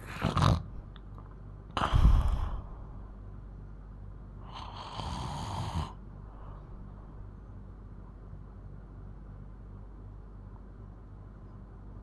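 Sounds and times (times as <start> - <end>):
girl snoring loudly: 1.8 - 2.8, 4.5 - 6.0.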